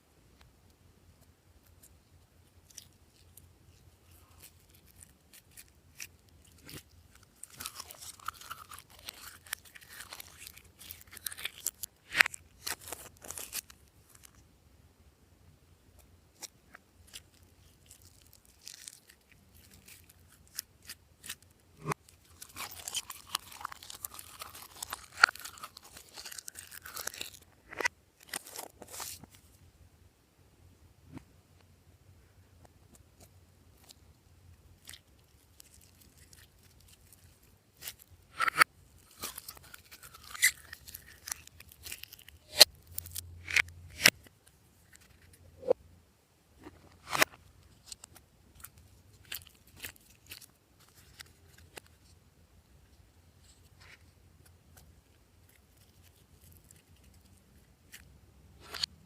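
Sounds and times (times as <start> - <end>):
slime crackling and squelching: 2.6 - 14.4, 16.4 - 29.2, 34.8 - 44.2, 47.1 - 51.9, 55.4 - 58.9.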